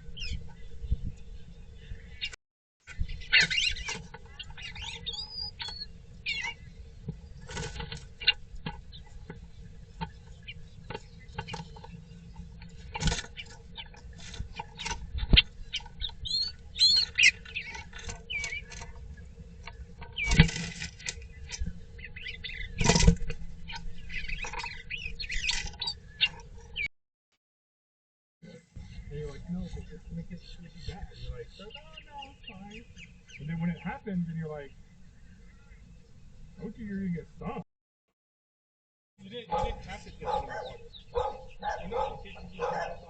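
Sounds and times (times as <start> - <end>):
small birds chirping: 0.0 - 26.9, 28.5 - 37.6, 39.2 - 43.0.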